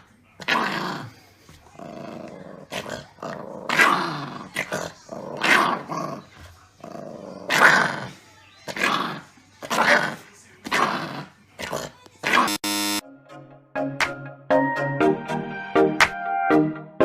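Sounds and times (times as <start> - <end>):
puppy growling: 0.4 - 12.5.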